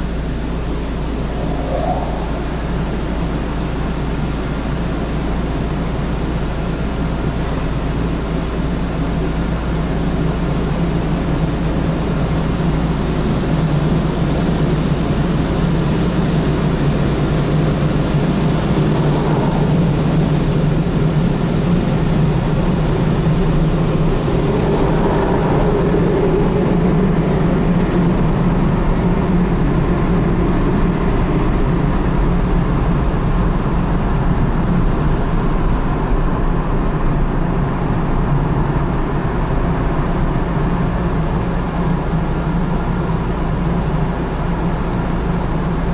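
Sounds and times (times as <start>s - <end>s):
low hum: 0.0s - 5.1s, 16.2s - 28.8s.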